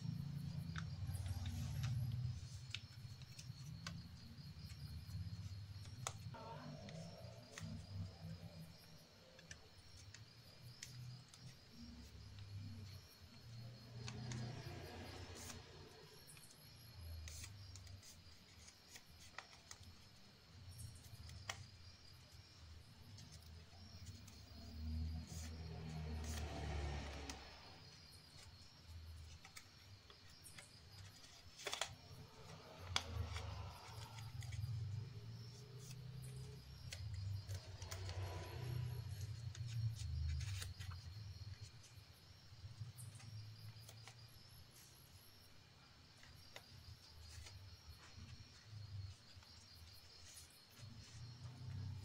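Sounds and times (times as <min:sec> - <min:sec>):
paper rustling and creasing: 0:00.1 - 0:45.2, 0:46.0 - 0:52.0
paper clicks: 0:00.4 - 0:42.0, 0:46.2 - 0:52.0.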